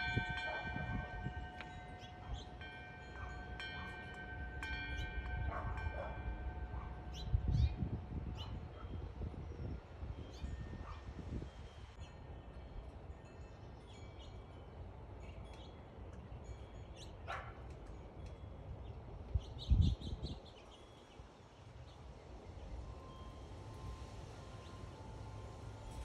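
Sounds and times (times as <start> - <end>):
songbirds chirping: 0.0 - 26.0.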